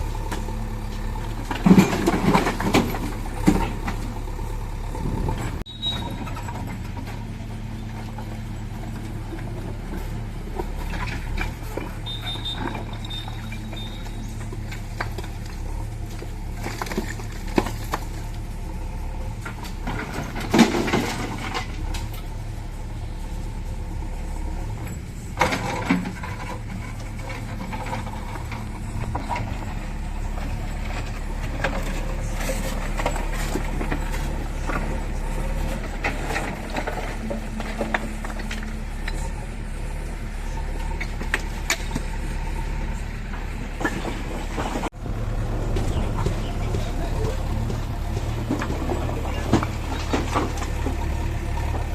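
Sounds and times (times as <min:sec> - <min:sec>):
backhoe diesel engine running: 0:00.0 - 0:51.9
digging clanks and knocks: 0:00.2 - 0:04.2, 0:24.8 - 0:39.4, 0:43.2 - 0:51.9.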